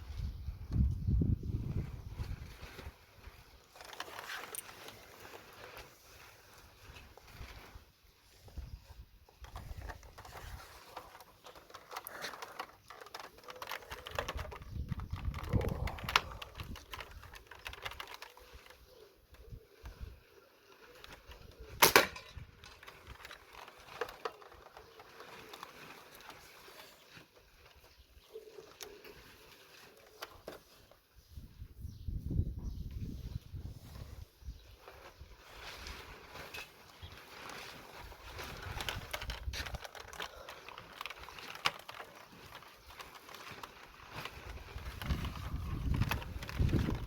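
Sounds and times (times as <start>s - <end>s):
wind rumbling on microphone: 0.0s - 3.5s, 14.0s - 18.0s, 31.2s - 36.2s, 38.0s - 40.0s, 43.7s - 47.0s
slingshot rifle sharp crack: 21.8s - 22.4s.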